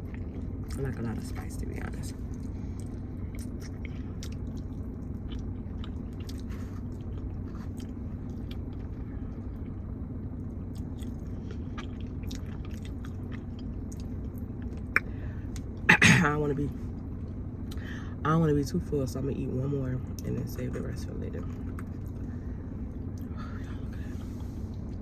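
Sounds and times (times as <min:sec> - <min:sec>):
steady low hum: 0:00.0 - 0:25.0
person chewing crunchy food: 0:02.3 - 0:15.8.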